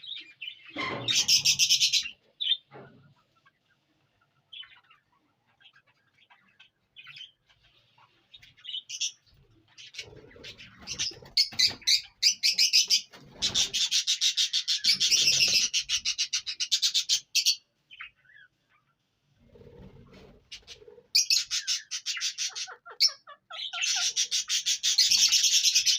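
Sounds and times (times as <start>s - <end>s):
parakeet chirping: 3.4s - 18.8s, 21.2s - 25.9s.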